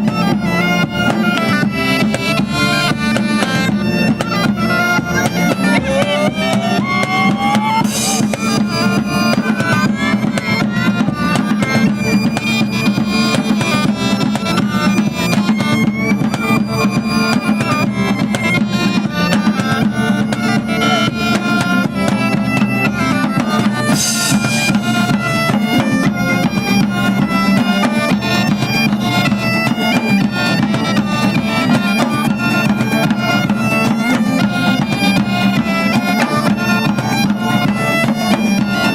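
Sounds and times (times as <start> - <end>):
bagpipe music: 0.0 - 38.9
drums: 0.0 - 38.9.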